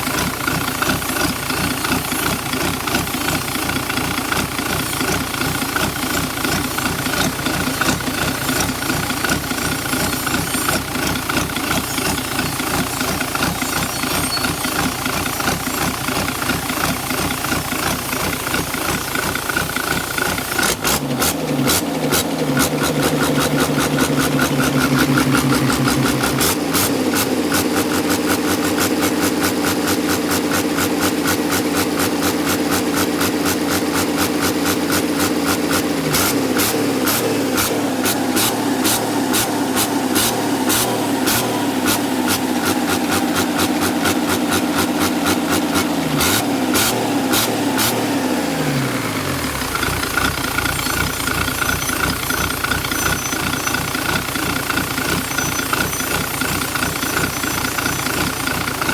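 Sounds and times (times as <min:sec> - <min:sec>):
engine running: 0:00.0 - 0:58.9
turbo whistle and hiss: 0:13.4 - 0:14.9.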